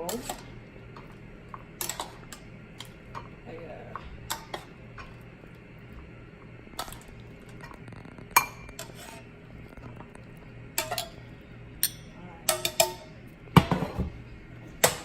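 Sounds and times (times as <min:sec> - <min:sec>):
dishes and utensils clinking: 0:00.0 - 0:05.2, 0:10.8 - 0:14.2
steady low hum: 0:00.0 - 0:15.0.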